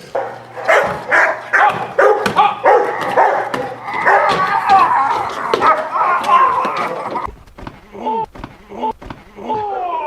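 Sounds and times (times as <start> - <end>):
dog barking: 0.0 - 7.3.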